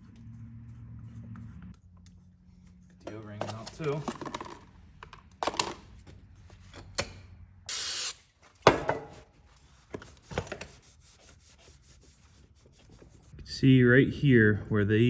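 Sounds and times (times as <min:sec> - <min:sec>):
short hiss: 0:07.7 - 0:08.2.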